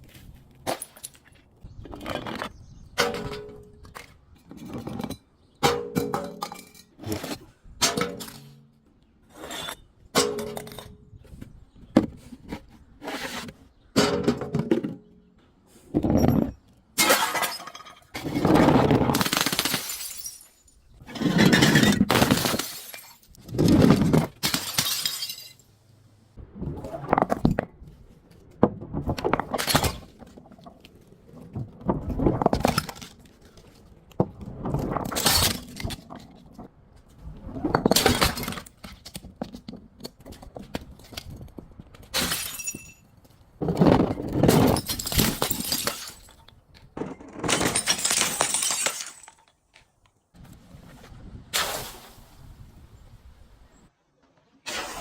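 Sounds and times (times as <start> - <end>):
glass bottles crushed and shattering: 4.6 - 7.0, 16.1 - 25.7, 29.3 - 30.2, 35.0 - 36.1, 37.8 - 38.8, 42.2 - 43.1, 43.7 - 49.6.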